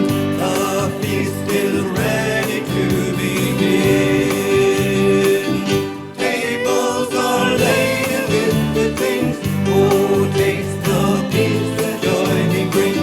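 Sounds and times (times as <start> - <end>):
choir singing with accompaniment: 0.0 - 13.0.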